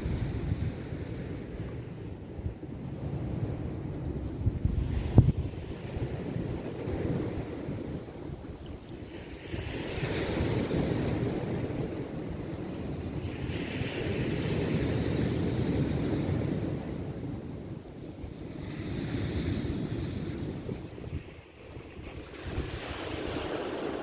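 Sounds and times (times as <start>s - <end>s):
wind on microphone: 0.0s - 24.0s
sea surf breaking: 20.0s - 24.0s.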